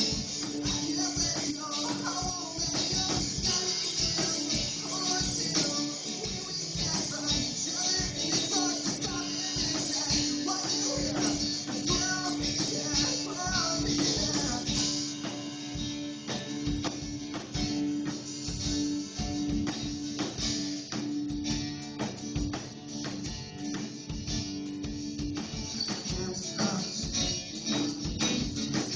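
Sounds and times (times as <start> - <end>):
person singing: 0.0 - 15.2, 25.8 - 28.9
strummed guitar: 0.0 - 28.9.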